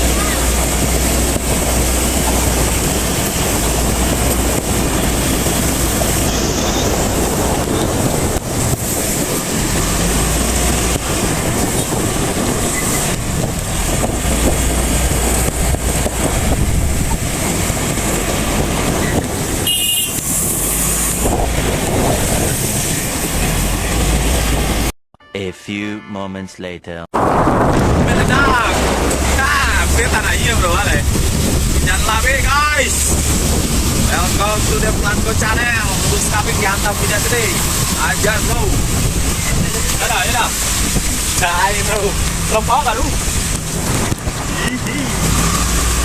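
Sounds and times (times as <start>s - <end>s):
heavy rain pouring: 0.0s - 24.9s, 27.2s - 46.0s
road traffic: 0.0s - 25.0s, 27.0s - 46.0s
vehicle horn toot: 19.6s - 20.3s.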